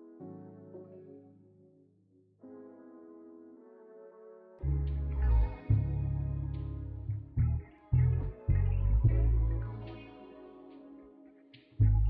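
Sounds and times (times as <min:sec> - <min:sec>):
guitar: 0:04.6 - 0:12.0.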